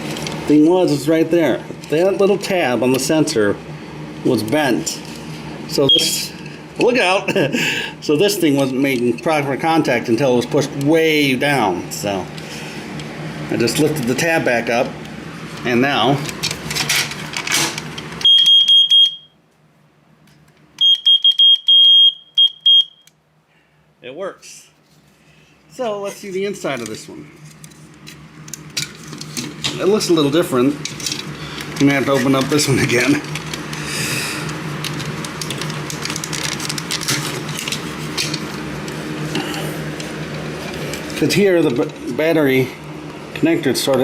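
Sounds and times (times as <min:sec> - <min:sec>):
steady low hum: 0:00.0 - 0:44.0
smoke alarm shrill tone: 0:05.8 - 0:06.3, 0:18.2 - 0:19.4, 0:20.8 - 0:23.1.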